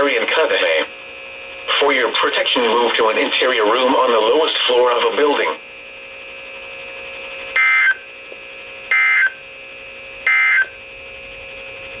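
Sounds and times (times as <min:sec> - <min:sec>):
faint radio hum: 0:00.0 - 0:05.8
buzzy data tone bursts: 0:10.2 - 0:10.8.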